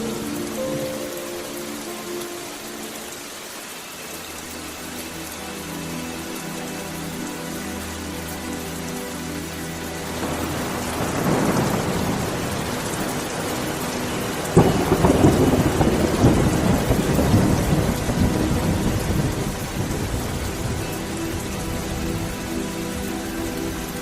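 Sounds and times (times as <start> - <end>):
heavy rain falling: 0.0 - 24.0
thunder rumble: 10.2 - 22.8.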